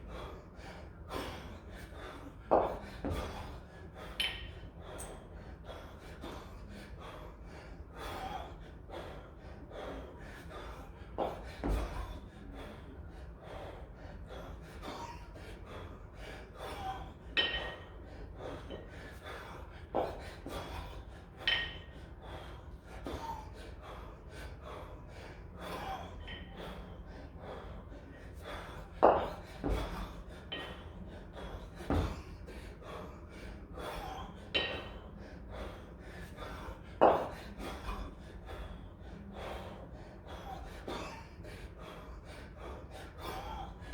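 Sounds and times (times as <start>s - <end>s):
metallic kettlebell clink: 4.2s - 4.6s, 17.4s - 17.9s, 21.4s - 21.9s, 34.6s - 35.0s.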